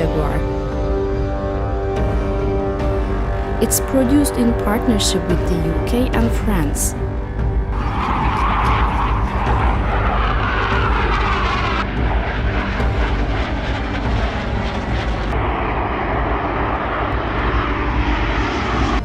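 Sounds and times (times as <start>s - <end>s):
jet engine roar: 7.7s - 19.0s.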